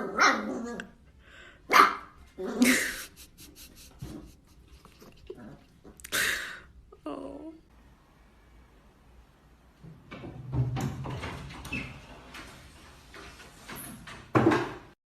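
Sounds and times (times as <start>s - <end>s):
dog barking: 1.7s - 2.2s.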